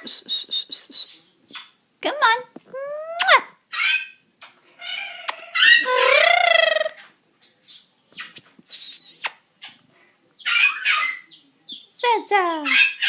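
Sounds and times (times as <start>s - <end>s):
parrot calling: 2.8s - 9.8s, 10.4s - 11.4s, 12.6s - 13.0s
parrot squawk: 3.2s - 4.2s, 4.8s - 7.1s, 10.4s - 11.3s, 12.6s - 13.0s.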